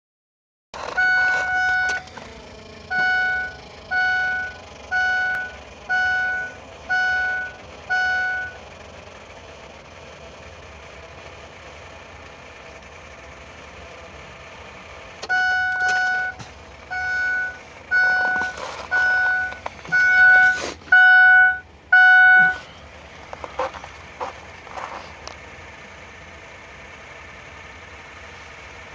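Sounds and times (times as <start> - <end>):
vehicle warning chime dinging: 0.8 - 9.0, 15.2 - 22.8.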